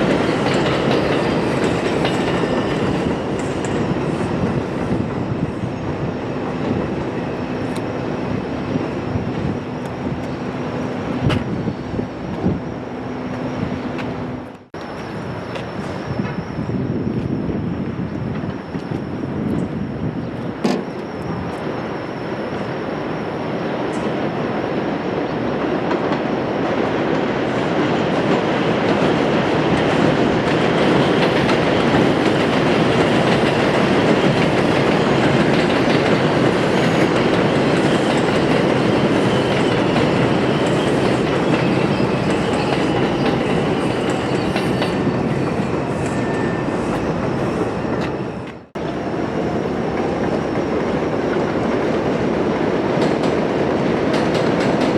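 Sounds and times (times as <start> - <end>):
train wheels clattering over rails: 0.0 - 5.2, 25.3 - 49.0, 49.9 - 54.9.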